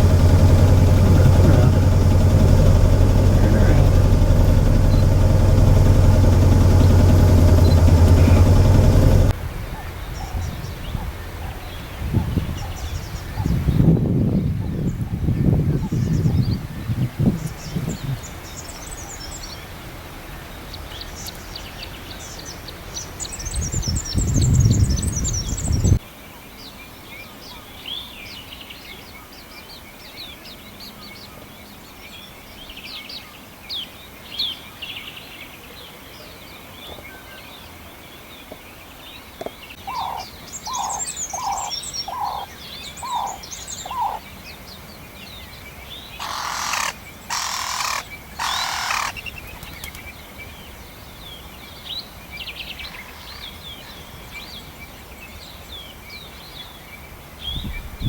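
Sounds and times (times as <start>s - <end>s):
lower bird notes: 0.0s - 9.3s
small birds chirping: 0.0s - 9.3s, 20.4s - 26.0s, 38.4s - 57.8s.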